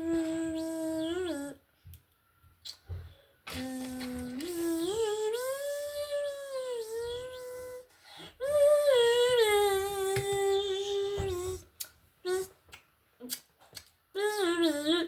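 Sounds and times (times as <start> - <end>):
high voice humming: 0.0 - 1.6, 3.5 - 12.6, 14.2 - 15.0.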